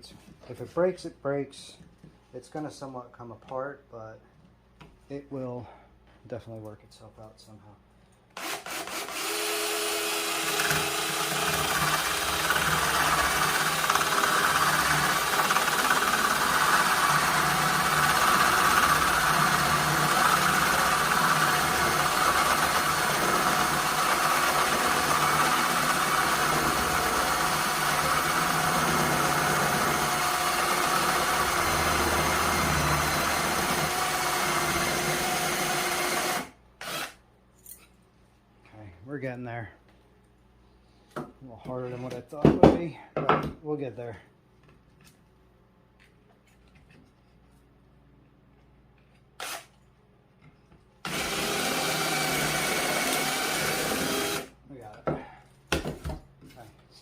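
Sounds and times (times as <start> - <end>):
electric drill boring through wood: 8.4 - 37.2, 49.4 - 49.7, 51.0 - 54.5.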